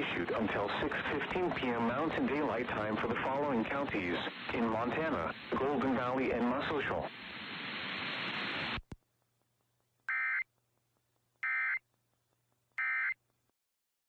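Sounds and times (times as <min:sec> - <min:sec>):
radio static hiss: 0:00.0 - 0:09.0.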